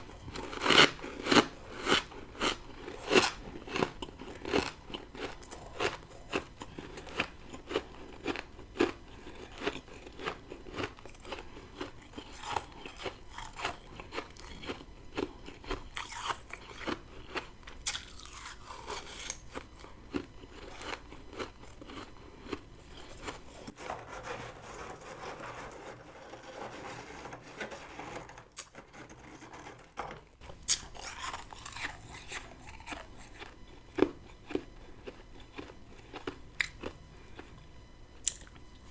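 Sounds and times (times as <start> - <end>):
person crunching frost: 0.0 - 23.7, 30.4 - 37.6.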